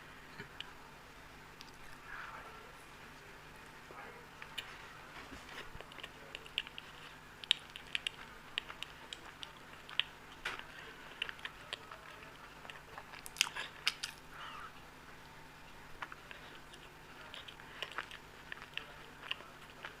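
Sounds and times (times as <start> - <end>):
person chewing with lip smacks: 5.6 - 14.3, 16.0 - 20.0.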